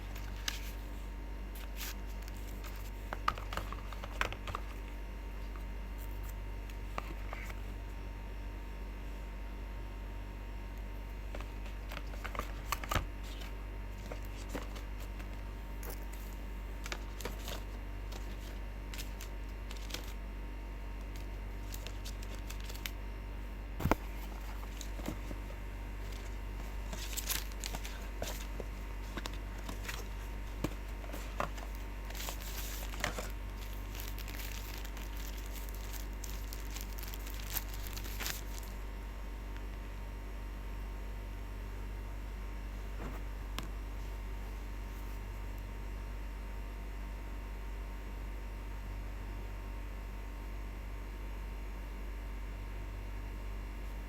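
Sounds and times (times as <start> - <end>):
low electrical hum: 0.0 - 54.0
plastic wrap crinkling and tearing: 15.9 - 20.2, 21.1 - 23.0, 24.0 - 38.8.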